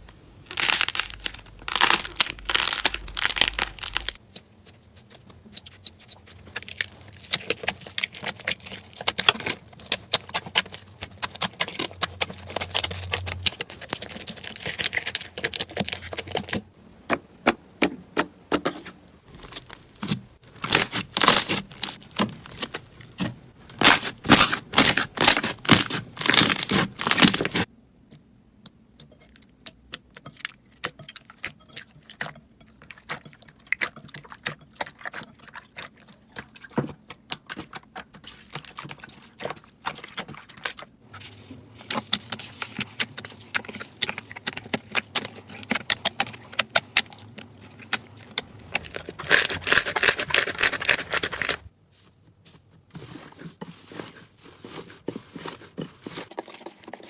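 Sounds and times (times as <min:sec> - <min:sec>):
slime crackling and popping: 0:00.5 - 0:04.2, 0:19.3 - 0:27.7.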